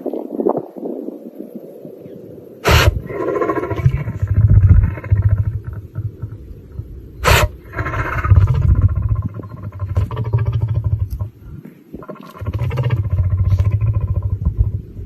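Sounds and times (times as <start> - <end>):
lion sneezing: 2.6 - 4.2, 7.2 - 8.3
lion throat rumble: 2.6 - 15.0.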